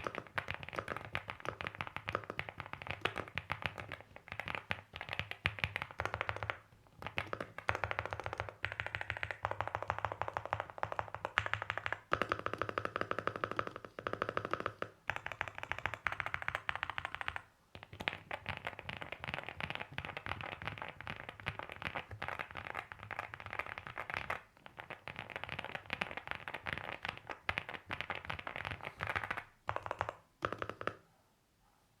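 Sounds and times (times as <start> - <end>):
mechanical keyboard typing: 0.0 - 31.0.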